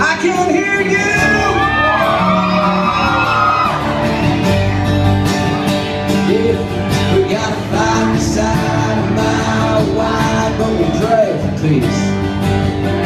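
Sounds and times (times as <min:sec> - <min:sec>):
country band playing: 0:00.0 - 0:13.0
drums: 0:00.0 - 0:13.0
guitars: 0:00.0 - 0:13.0
person singing: 0:06.2 - 0:12.1.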